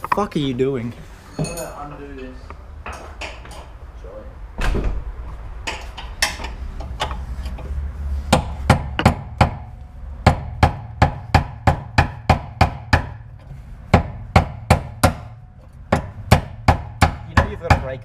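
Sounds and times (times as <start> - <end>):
hammer striking metal fastener: 8.3 - 9.7.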